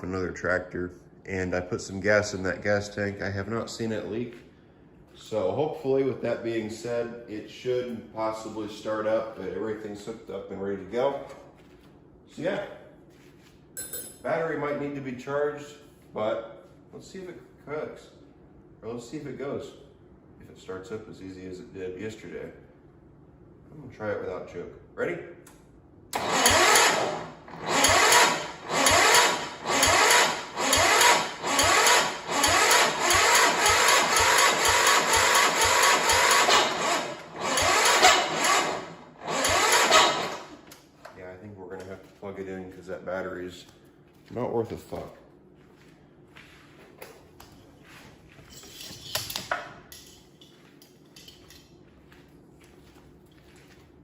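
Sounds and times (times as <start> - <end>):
engine cranking with electric starter: 26.1 - 40.6.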